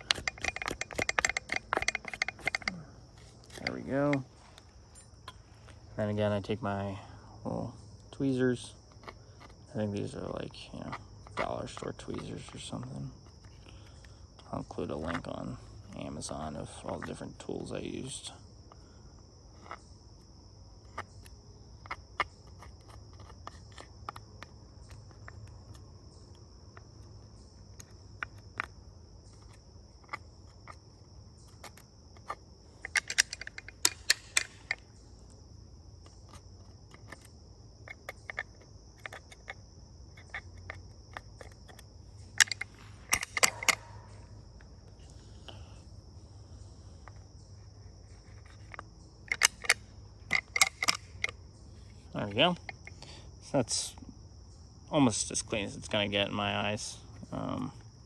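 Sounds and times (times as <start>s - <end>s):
metal tweezers clicking and scraping: 0.0s - 5.4s, 31.4s - 35.0s, 36.0s - 44.3s, 47.0s - 53.1s.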